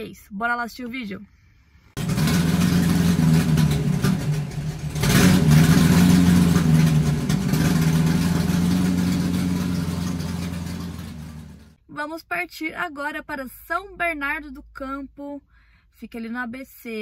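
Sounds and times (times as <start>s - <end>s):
car engine revving: 2.0s - 11.8s.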